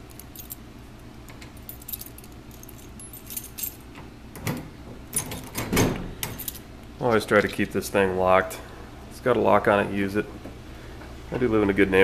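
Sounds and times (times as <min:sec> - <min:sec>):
keys jangling and clicking in lock: 0:01.4 - 0:03.9, 0:04.5 - 0:06.6.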